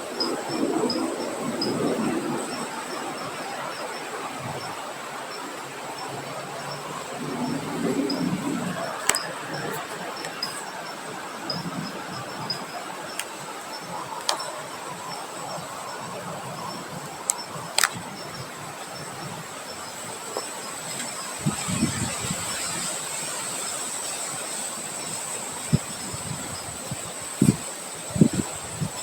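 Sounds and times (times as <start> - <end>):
wind through vegetation: 0.0 - 29.0
sharp clicks: 17.3 - 18.0.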